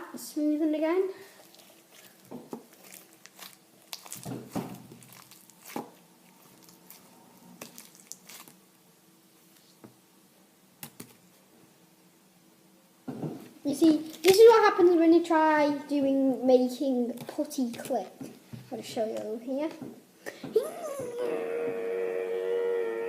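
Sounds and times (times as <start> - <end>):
slime squishing by hand: 1.4 - 8.6, 13.7 - 14.8.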